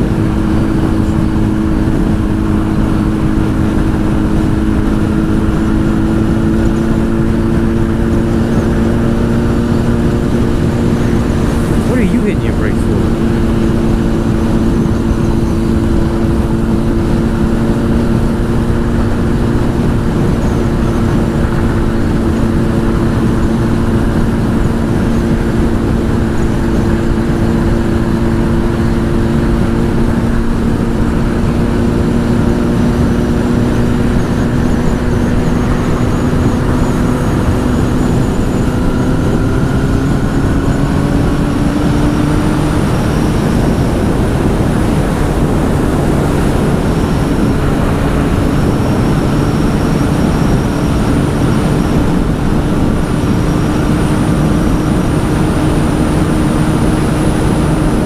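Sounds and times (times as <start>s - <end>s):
wind rush on microphone: 0.0s - 12.3s, 12.9s - 58.0s
motorcycle engine cruising: 0.0s - 58.0s.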